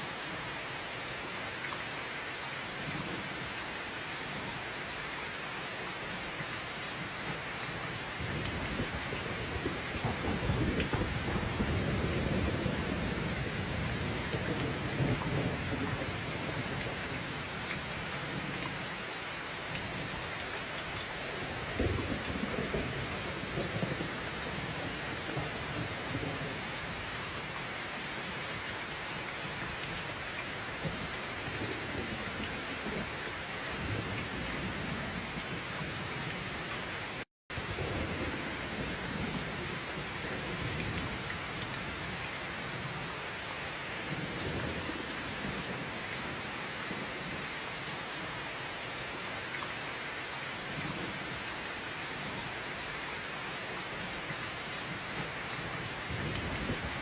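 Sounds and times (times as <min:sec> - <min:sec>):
heavy rain: 0:00.0 - 0:57.0
low rumble of thunder: 0:08.2 - 0:17.2, 0:21.5 - 0:27.1, 0:37.6 - 0:42.2, 0:55.6 - 0:57.0.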